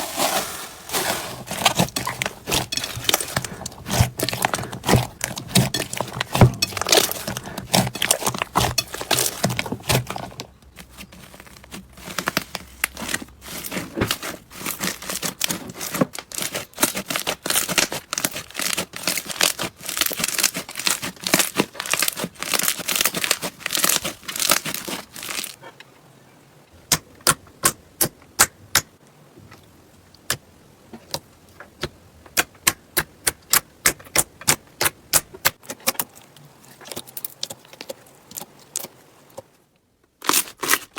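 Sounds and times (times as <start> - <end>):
slime crackling and popping: 0.9 - 25.6.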